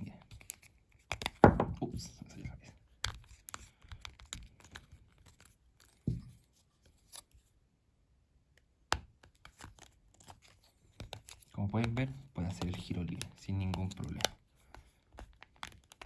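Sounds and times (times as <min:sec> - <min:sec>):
dull knock: 0:01.4 - 0:01.8
plastic parts clicking and scraping: 0:09.4 - 0:16.0.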